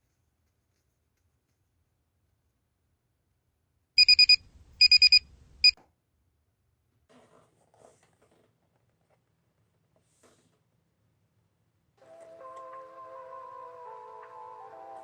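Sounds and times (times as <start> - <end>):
alarm clock beeping: 4.0 - 5.8.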